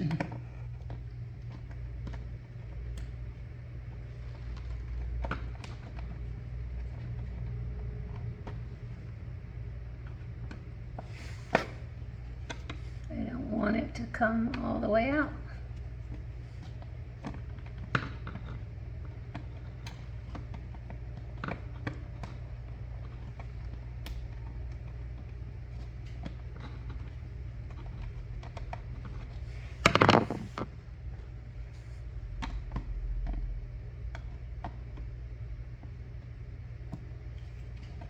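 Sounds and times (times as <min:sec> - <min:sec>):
small clicks and scrapes: 0:00.0 - 0:09.1, 0:15.5 - 0:30.8
steady low hum: 0:00.0 - 0:38.0.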